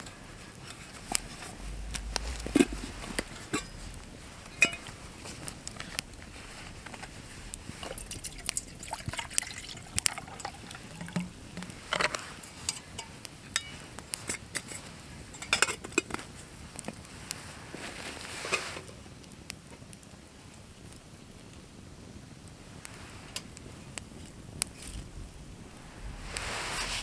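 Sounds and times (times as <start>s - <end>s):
water sloshing: 1.0s - 11.9s.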